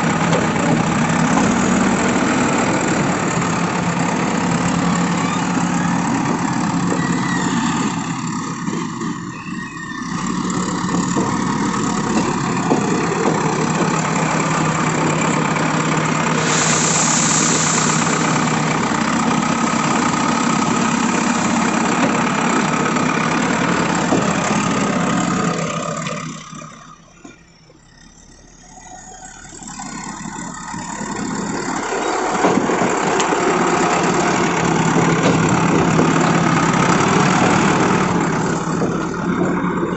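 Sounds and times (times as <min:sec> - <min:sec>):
diesel engine running: 0:00.0 - 0:39.9
brief high hiss: 0:16.4 - 0:18.0.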